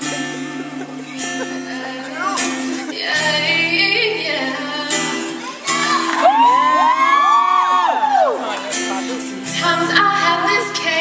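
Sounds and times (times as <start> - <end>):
woman singing: 0.0 - 6.8, 9.2 - 11.0
strummed acoustic guitar: 0.0 - 7.0, 8.4 - 11.0.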